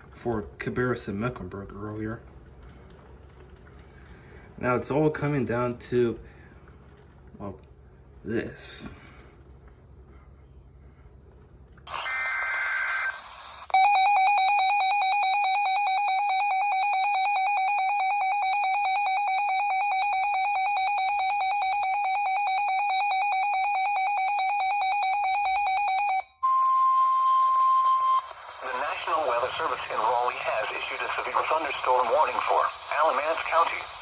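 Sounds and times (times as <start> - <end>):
radio hiss with data tones: 11.9 - 13.7, 28.2 - 34.0
warbling electronic alarm tone: 11.9 - 28.9.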